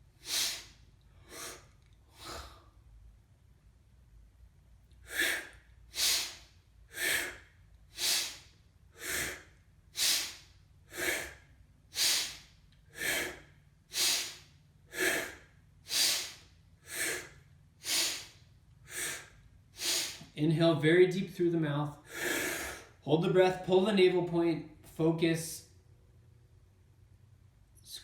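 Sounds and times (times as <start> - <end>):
strong rhythmic breathing: 0.0 - 2.8, 4.9 - 21.4, 22.0 - 23.3.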